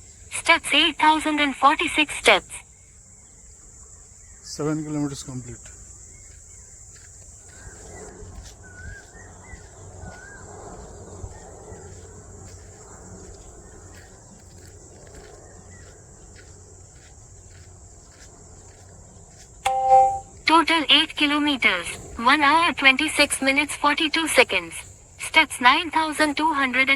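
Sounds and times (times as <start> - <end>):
insects trilling: 0.0 - 26.9
faint walking footsteps: 5.6 - 26.9.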